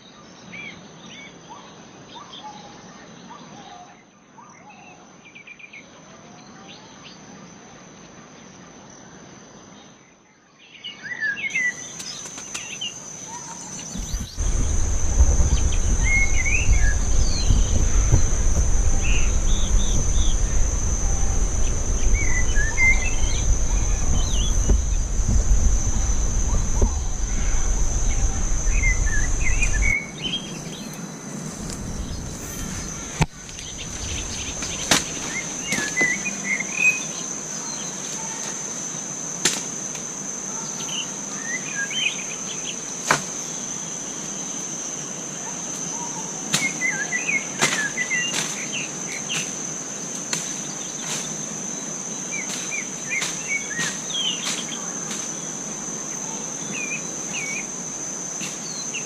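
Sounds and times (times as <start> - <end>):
insects droning: 11.4 - 59.0
bird chirping: 11.5 - 36.7
low rumble: 13.8 - 35.7.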